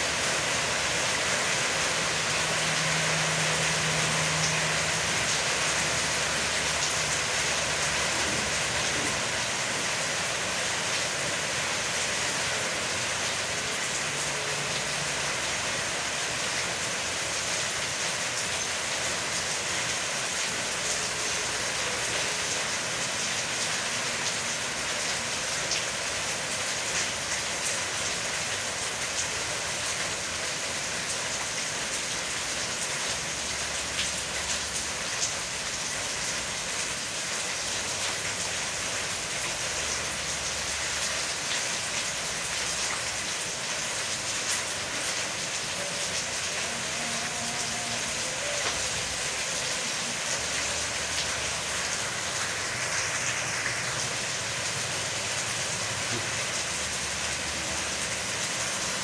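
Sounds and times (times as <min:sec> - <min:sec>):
steady rain falling: 0:00.0 - 0:59.0
ticks of raindrops: 0:00.0 - 0:59.0.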